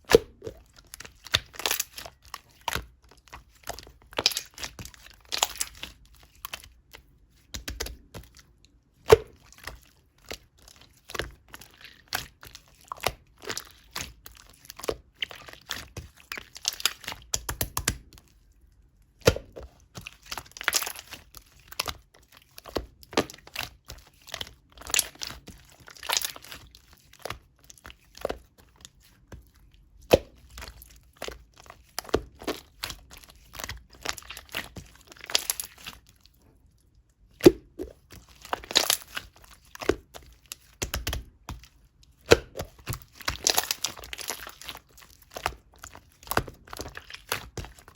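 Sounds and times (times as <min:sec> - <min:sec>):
slime popping and crackling: 0:00.0 - 0:02.9, 0:03.8 - 0:06.0, 0:20.2 - 0:22.0, 0:24.5 - 0:27.5, 0:30.0 - 0:36.0, 0:37.4 - 0:41.4, 0:42.2 - 0:47.9.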